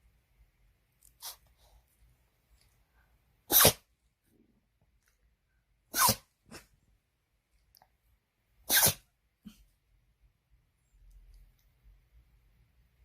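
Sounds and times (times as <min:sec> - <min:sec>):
dog sneezing: 0:01.2 - 0:01.5, 0:03.5 - 0:03.9, 0:05.9 - 0:06.7, 0:08.6 - 0:09.6.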